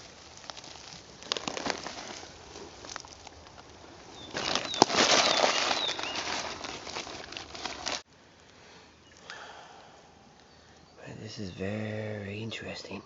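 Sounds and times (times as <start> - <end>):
high bird chirps: 4.2 - 6.3.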